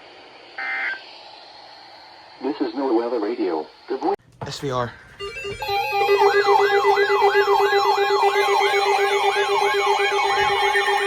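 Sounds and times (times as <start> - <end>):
steady siren tone: 0.0 - 4.2, 5.2 - 11.0
fast yelping siren: 5.2 - 11.0.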